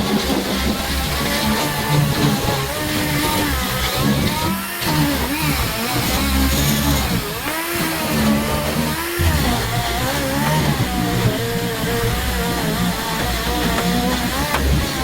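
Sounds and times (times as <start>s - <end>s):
music with guitar and bass: 9.1s - 15.0s.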